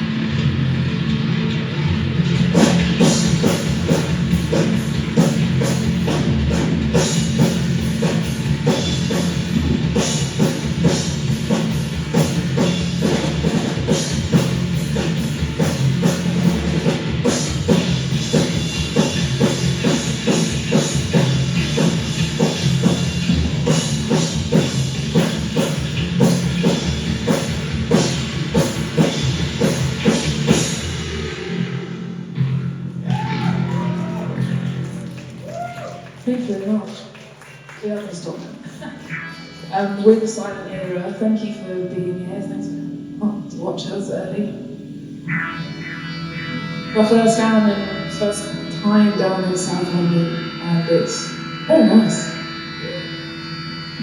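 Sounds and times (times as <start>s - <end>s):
bass and guitar: 0.0s - 54.0s
drum kit beat: 2.0s - 31.4s.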